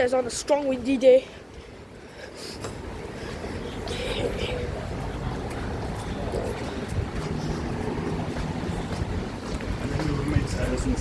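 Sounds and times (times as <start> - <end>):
wind buffeting microphone: 2.8 - 11.0.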